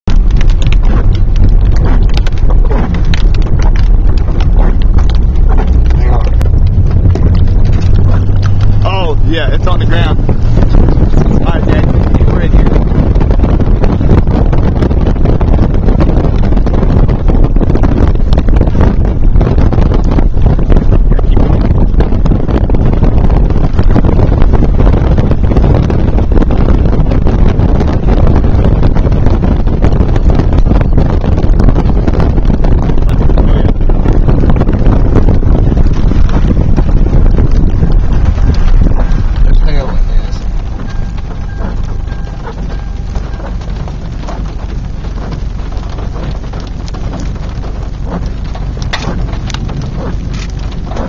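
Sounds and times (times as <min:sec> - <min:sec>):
heavy rain beating on a vehicle: 0:00.0 - 0:51.0
low rumble: 0:00.0 - 0:51.0
strong wind buffeting microphone: 0:00.0 - 0:51.0.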